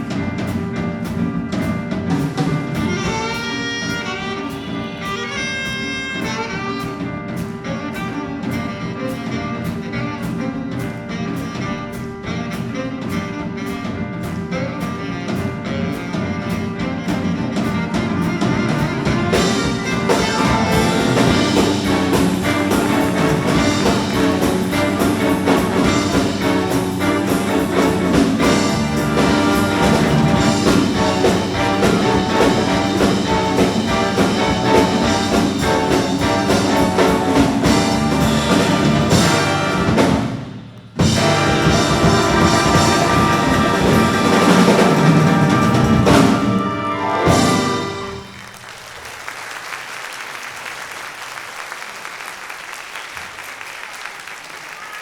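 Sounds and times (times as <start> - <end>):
steady drum beat: 0.0 - 48.5
trumpets and trombones: 0.0 - 48.6
jazz big band playing: 0.0 - 49.3.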